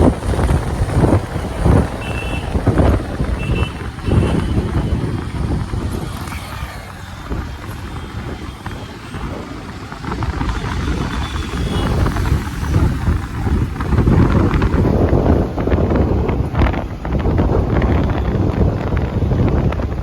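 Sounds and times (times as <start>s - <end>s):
vehicle road noise rumble: 0.0s - 20.0s.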